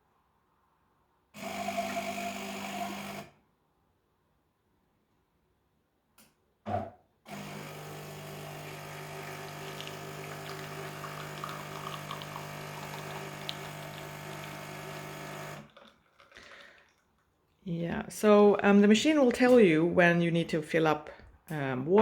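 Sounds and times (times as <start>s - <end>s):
espresso machine pump humming: 7.3s - 15.7s.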